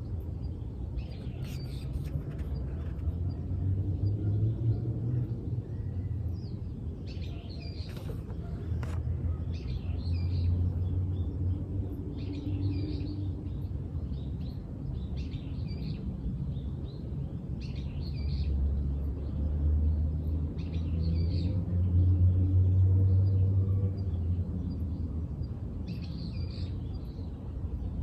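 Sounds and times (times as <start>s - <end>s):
birds singing: 0.0s - 18.6s.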